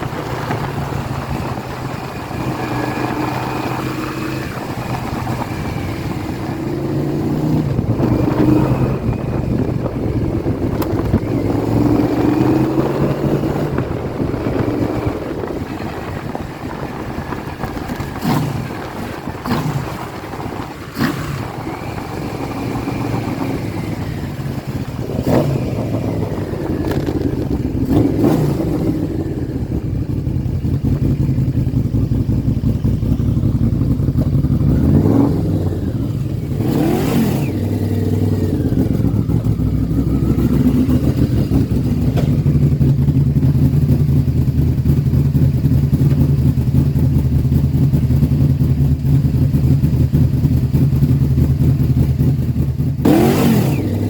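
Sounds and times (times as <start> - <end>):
motorcycle engine revving: 0.0 - 54.0
sharp clunks: 42.0 - 42.6.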